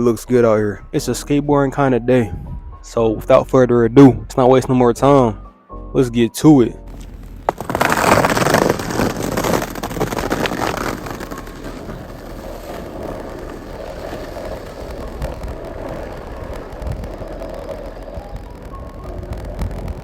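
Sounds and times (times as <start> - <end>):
skateboard wheels rolling on pavement: 6.9 - 20.0.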